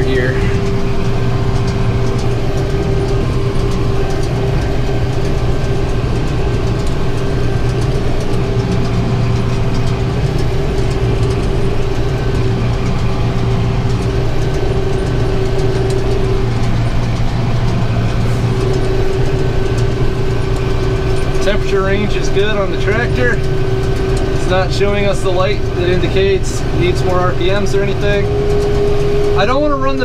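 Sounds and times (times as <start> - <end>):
steady whining tone: 0.0 - 30.0
tractor and baler running: 0.0 - 30.0.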